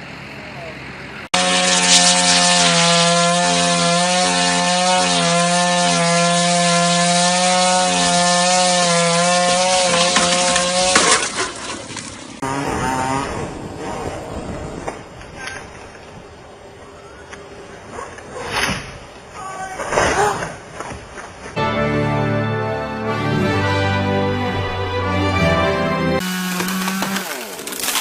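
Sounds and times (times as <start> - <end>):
chainsaw cutting wood: 1.4 - 13.9, 26.2 - 28.0.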